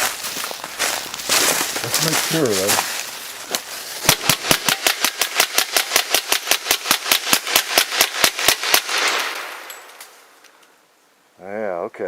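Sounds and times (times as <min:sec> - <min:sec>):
suppressed rifle rapid fire: 0:04.0 - 0:09.6.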